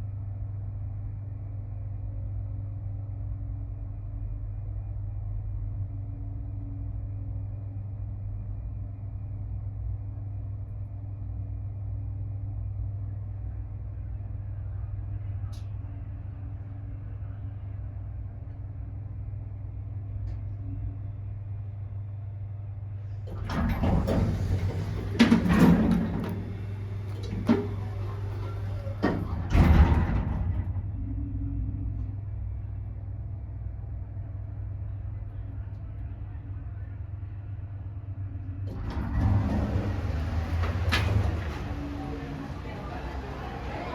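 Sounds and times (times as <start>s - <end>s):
elevator humming: 5.9s - 43.9s
elevator doors sliding: 23.1s - 32.2s, 38.2s - 43.9s
clunks: 23.2s - 31.1s, 38.6s - 43.9s.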